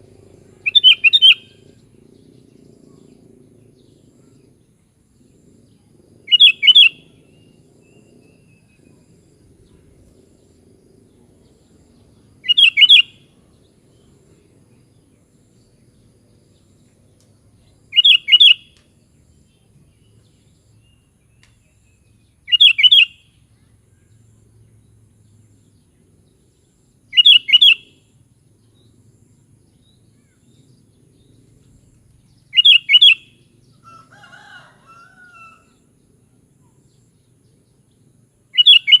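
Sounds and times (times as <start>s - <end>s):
bulbul calling: 0.5s - 1.7s, 6.3s - 7.4s, 12.4s - 13.3s, 17.9s - 18.8s, 22.5s - 23.3s, 27.1s - 28.0s, 32.5s - 34.0s, 38.6s - 39.0s.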